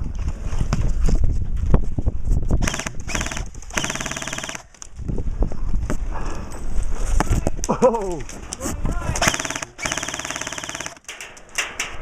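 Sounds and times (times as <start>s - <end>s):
handling and wind noise: 0.0s - 12.0s
airsoft gun full-auto bursts: 2.6s - 4.8s, 9.2s - 11.1s.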